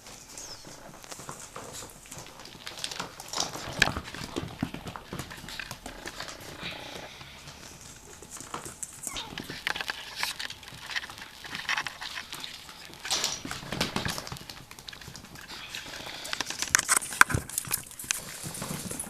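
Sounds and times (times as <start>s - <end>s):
puppy paws clicking and tapping: 0.0s - 19.0s
puppies squeaking: 0.3s - 1.0s, 8.9s - 10.4s.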